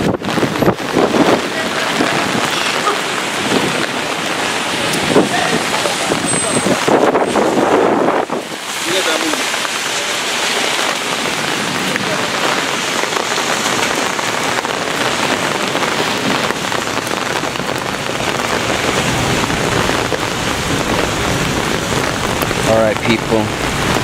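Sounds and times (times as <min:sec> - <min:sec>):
heavy rain: 0:00.0 - 0:24.0
low rumble: 0:16.1 - 0:24.0.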